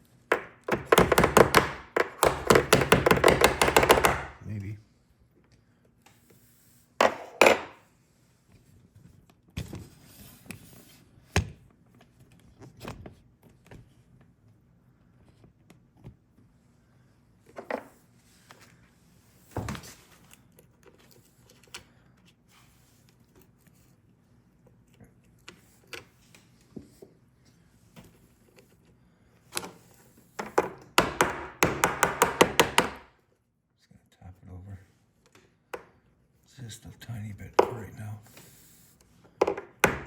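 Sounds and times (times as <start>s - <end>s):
sharp knocks and taps: 0.3s - 4.4s.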